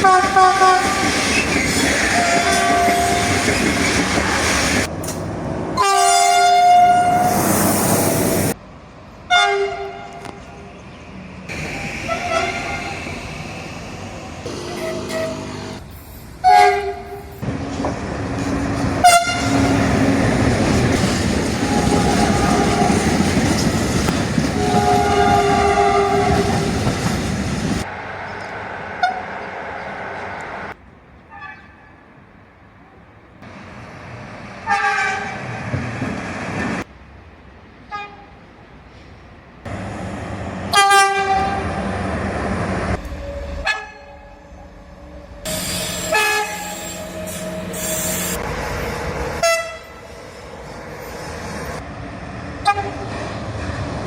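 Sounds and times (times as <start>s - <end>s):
train horn blasts: 0.0s - 1.1s, 2.2s - 3.5s, 5.8s - 7.3s, 9.3s - 10.4s, 14.5s - 15.8s, 16.4s - 17.4s, 19.0s - 20.2s, 21.6s - 23.2s, 24.5s - 26.8s, 34.6s - 35.4s, 40.7s - 41.8s, 45.4s - 48.5s, 49.4s - 50.1s, 52.6s - 53.1s
train rumbling past: 0.0s - 54.0s.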